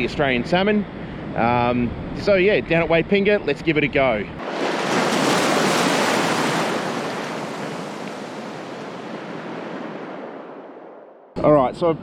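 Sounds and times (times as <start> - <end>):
ocean surf rushing on beach: 4.4 - 11.2.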